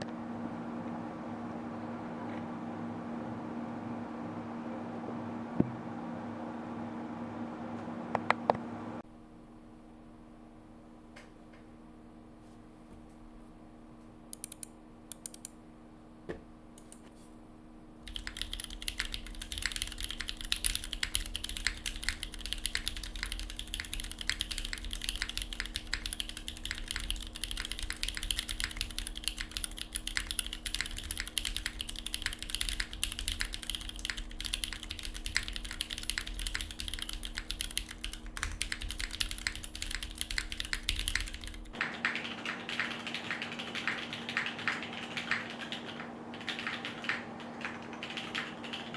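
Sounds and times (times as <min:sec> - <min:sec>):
typing on mechanical keyboard: 0:14.4 - 0:15.5, 0:18.1 - 0:48.9.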